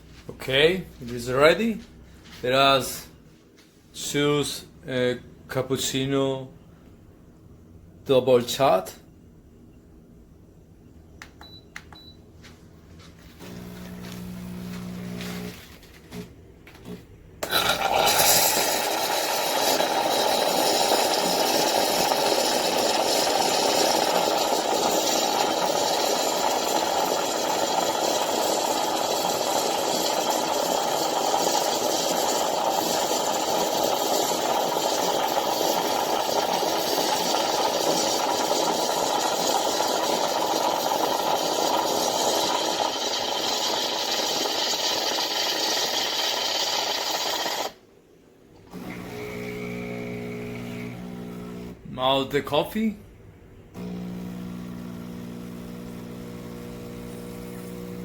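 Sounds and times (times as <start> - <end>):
milk frother steaming milk: 13.4 - 15.8, 17.4 - 47.8, 48.7 - 51.8, 53.8 - 58.0.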